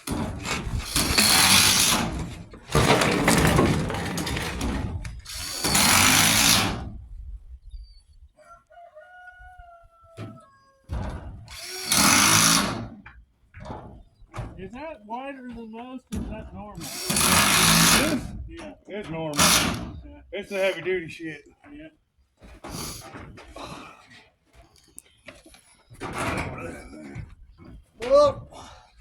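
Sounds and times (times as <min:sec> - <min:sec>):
power tool bursts: 0:00.8 - 0:04.7, 0:05.3 - 0:06.9, 0:11.5 - 0:12.8, 0:16.8 - 0:18.3, 0:19.4 - 0:19.9
rooster crowing faintly: 0:08.4 - 0:10.9.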